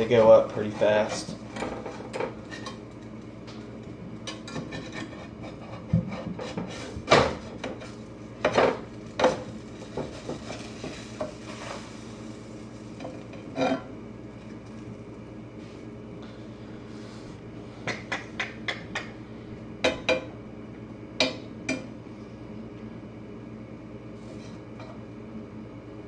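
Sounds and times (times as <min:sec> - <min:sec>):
spatula scraping frying pan: 0:00.0 - 0:02.8, 0:04.4 - 0:07.0, 0:10.1 - 0:11.9, 0:13.4 - 0:13.9.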